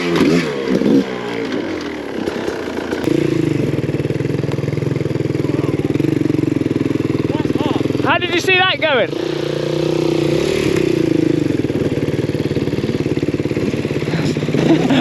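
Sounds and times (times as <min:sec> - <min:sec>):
dirt bike engine idling: 0:00.0 - 0:15.0.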